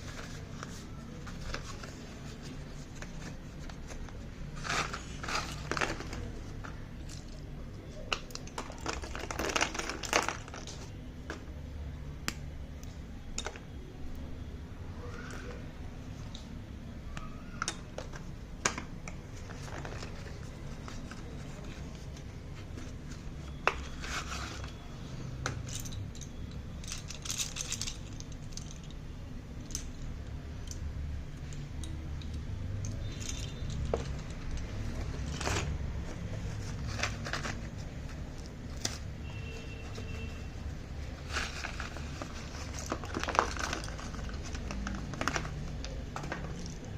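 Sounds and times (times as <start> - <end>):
packaging rustling or tearing: 0.0 - 7.4, 8.3 - 10.9, 33.0 - 46.9.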